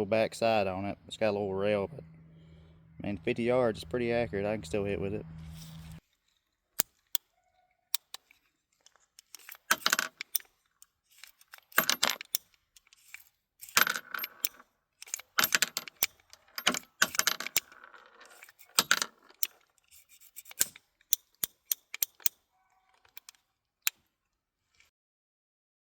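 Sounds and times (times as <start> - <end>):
revolver metallic clicks: 7.9 - 8.4, 18.3 - 22.4, 23.0 - 24.0
metal clinking rattles: 8.2 - 23.4.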